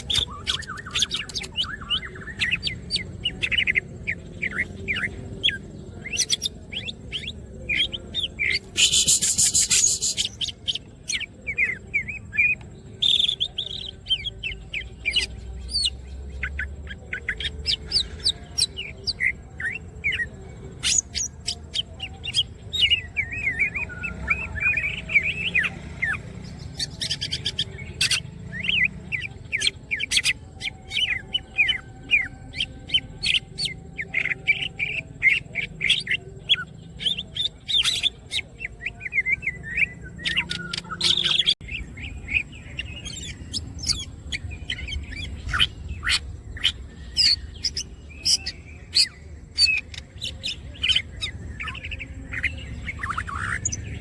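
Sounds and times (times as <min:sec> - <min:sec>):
bird chirping and whistling: 0:00.0 - 0:13.6.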